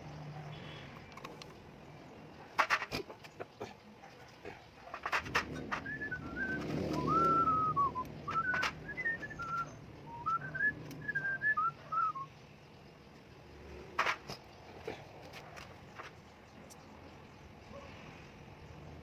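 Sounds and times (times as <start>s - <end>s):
person whistling: 5.7s - 12.3s.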